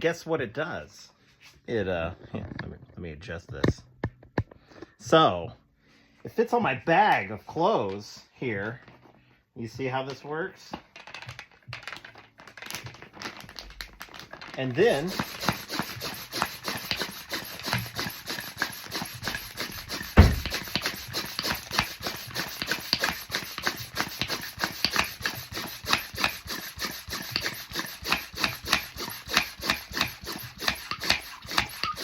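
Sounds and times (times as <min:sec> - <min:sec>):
small air pump strokes: 0:14.6 - 0:32.0
heavy thump: 0:19.3 - 0:20.9.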